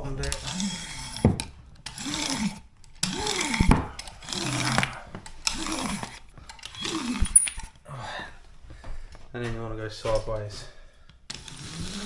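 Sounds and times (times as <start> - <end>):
hand roller rubbing over foil: 0.0 - 7.9, 10.6 - 12.0.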